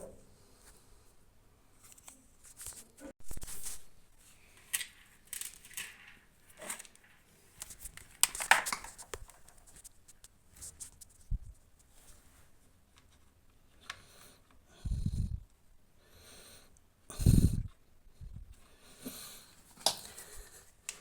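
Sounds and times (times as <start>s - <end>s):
rustling: 1.8s - 13.4s.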